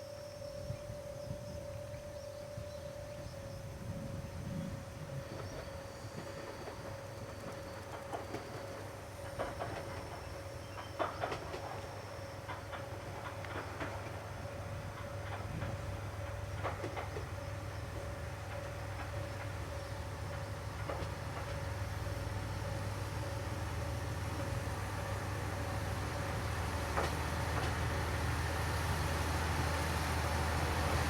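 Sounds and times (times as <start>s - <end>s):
train running with low hum: 0.0s - 31.0s.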